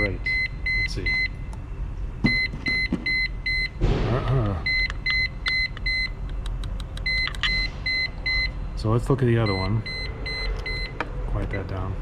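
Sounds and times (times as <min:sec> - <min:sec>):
infusion pump alarm beeping: 0:00.0 - 0:01.4, 0:02.2 - 0:03.8, 0:04.6 - 0:06.2, 0:07.0 - 0:11.8.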